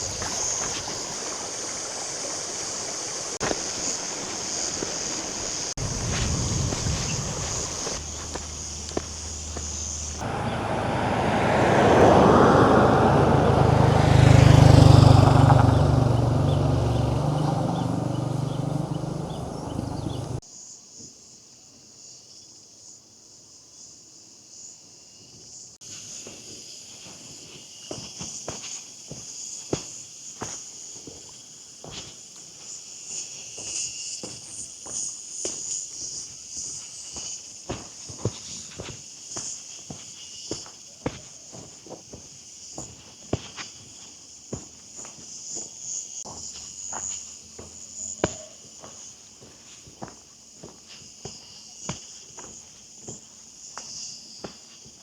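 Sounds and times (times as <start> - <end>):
footsteps crunching on path: 0.0 - 1.2, 3.4 - 10.3
insects buzzing: 0.0 - 20.4
large vehicle engine rumble: 5.8 - 20.4.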